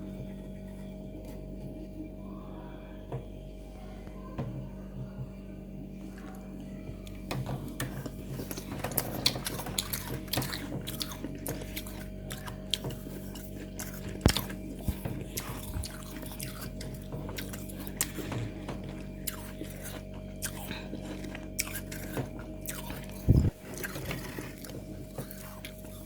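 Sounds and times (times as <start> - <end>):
chewing crunchy frost: 7.1 - 26.0.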